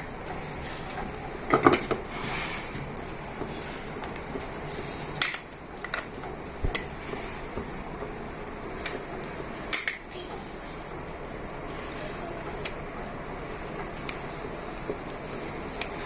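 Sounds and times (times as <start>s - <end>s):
plastic parts clicking and knocking: 1.0s - 2.1s, 5.1s - 7.0s, 8.5s - 10.1s.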